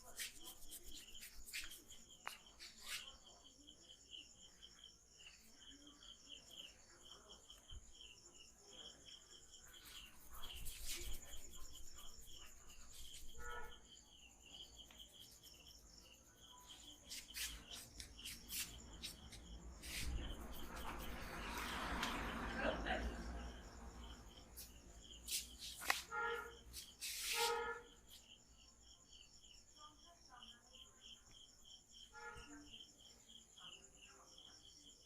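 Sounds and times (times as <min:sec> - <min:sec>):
high regular chirping: 0:00.0 - 0:03.4, 0:09.2 - 0:21.7
sharp clicks and slaps: 0:25.3 - 0:26.1.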